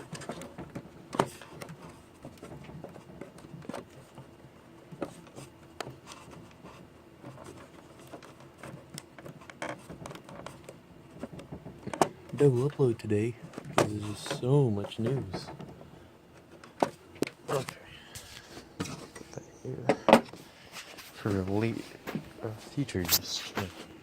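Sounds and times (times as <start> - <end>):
clicks and taps handling computer parts: 0.0 - 4.3, 4.9 - 12.8, 13.4 - 20.4.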